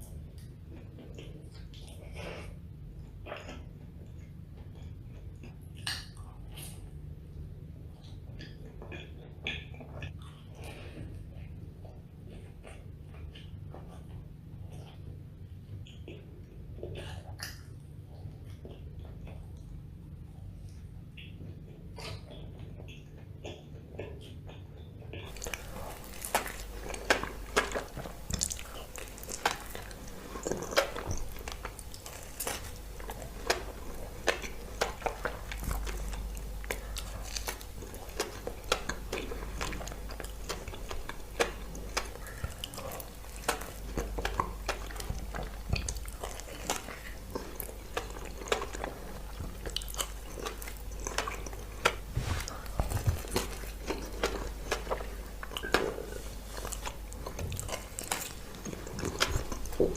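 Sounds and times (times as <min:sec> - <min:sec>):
biting and chewing: 0:21.5 - 0:59.9.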